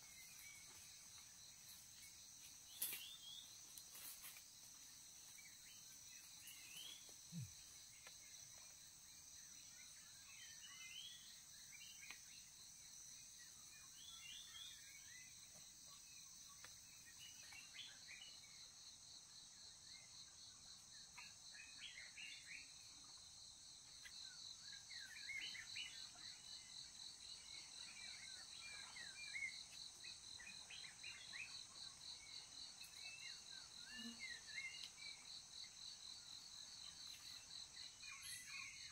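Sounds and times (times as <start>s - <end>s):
high insect drones and trills: 0.0s - 38.9s
rapidly pulsing insect trill: 0.0s - 38.9s.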